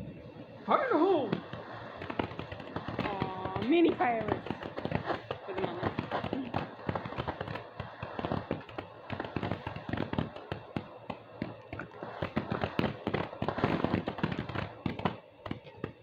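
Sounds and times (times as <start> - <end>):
fireworks crackling: 0.0 - 16.0.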